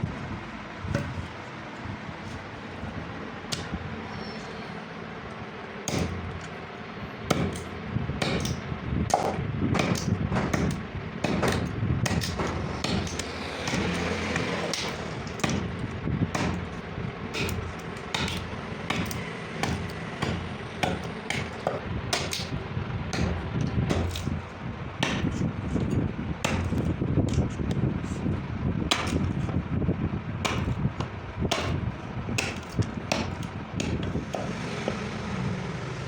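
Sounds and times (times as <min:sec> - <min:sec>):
steady low hum: 0:00.0 - 0:36.0
hammer strikes: 0:05.9 - 0:06.4, 0:07.3 - 0:24.4, 0:25.0 - 0:25.8, 0:26.4 - 0:27.5, 0:30.4 - 0:30.8, 0:31.5 - 0:31.8, 0:32.4 - 0:35.1.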